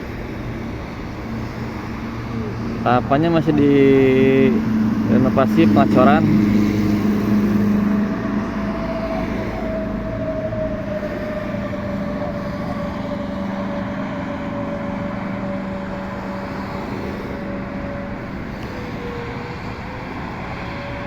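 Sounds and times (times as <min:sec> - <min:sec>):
vehicle passing with whine: 0:00.0 - 0:21.0.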